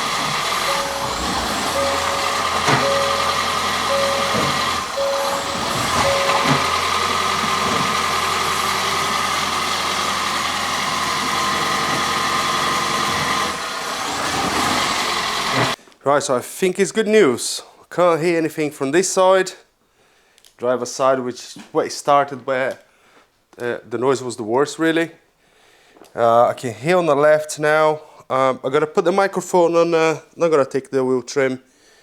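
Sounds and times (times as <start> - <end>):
short warning beeps: 0.0 - 8.6
car moving with steady whine: 0.0 - 15.8.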